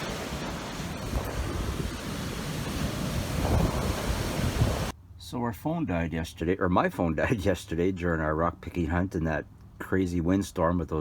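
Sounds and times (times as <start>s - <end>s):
waves breaking on shore: 0.0s - 4.9s
wind buffeting microphone: 0.0s - 4.9s.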